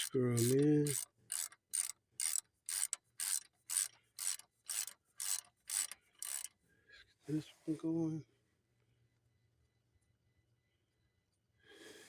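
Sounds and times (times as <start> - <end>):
ratchet wrench clicking: 0.0 - 6.5.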